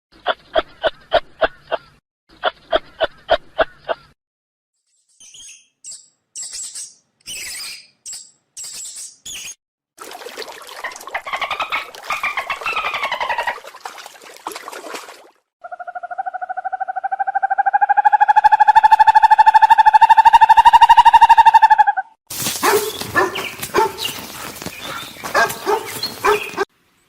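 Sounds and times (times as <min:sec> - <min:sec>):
mouse squeaks: 0:05.2 - 0:09.6
dolphin whistle: 0:16.7 - 0:22.2.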